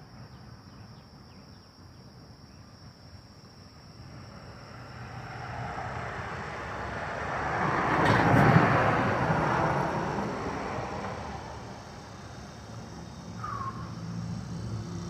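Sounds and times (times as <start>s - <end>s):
vehicle passing by: 3.8s - 15.0s.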